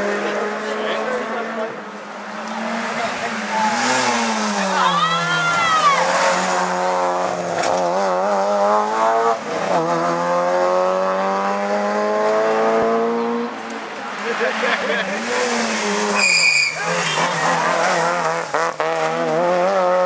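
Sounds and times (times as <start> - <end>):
rally car engine revving: 0.0 - 20.0
tyre squeal: 15.8 - 18.3.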